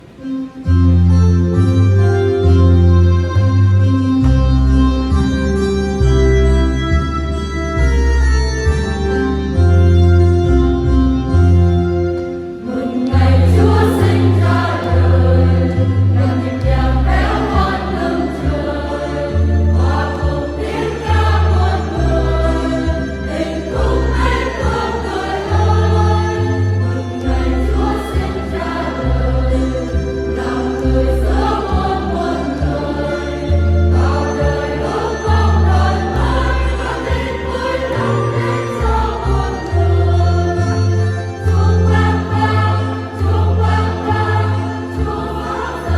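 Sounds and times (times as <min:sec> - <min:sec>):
instrumental accompaniment: 0:00.0 - 0:45.9
church choir singing a hymn: 0:12.6 - 0:45.9
steady bass line: 0:13.2 - 0:45.9.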